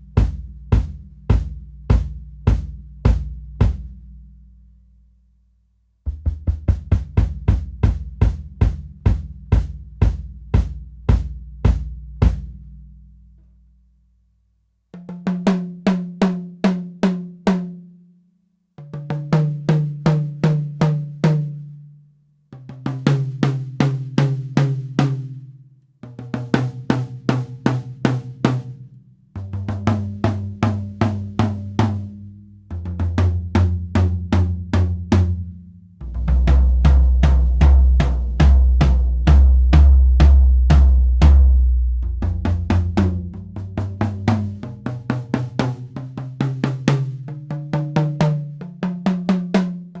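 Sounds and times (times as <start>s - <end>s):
drums struck repeatedly: 6.1s - 12.5s, 36.0s - 48.2s.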